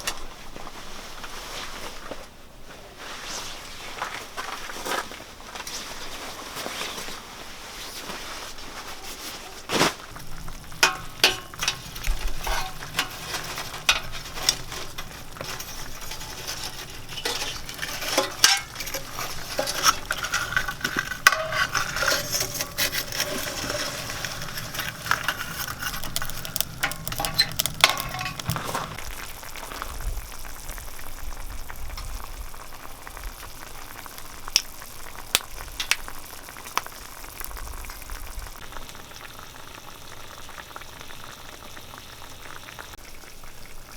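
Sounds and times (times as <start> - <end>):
utensil scraping a pan: 9.7 - 29.0
food sizzling in a hot pan: 10.0 - 43.9.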